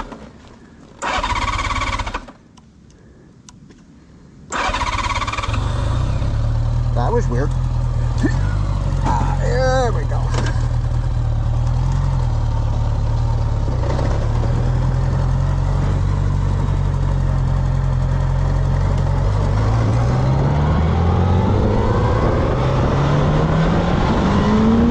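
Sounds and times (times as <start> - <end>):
motorcycle engine running: 5.1 - 22.9.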